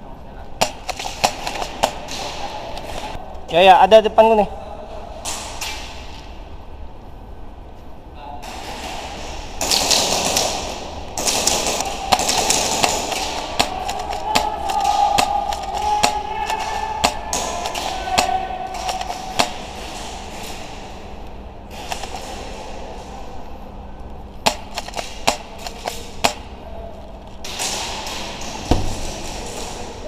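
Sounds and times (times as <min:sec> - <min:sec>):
airsoft gun shots: 0:27.5 - 0:29.5.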